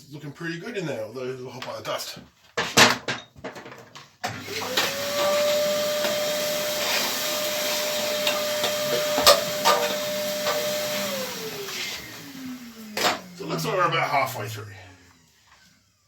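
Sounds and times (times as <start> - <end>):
electric motor spinning: 4.4 - 15.7.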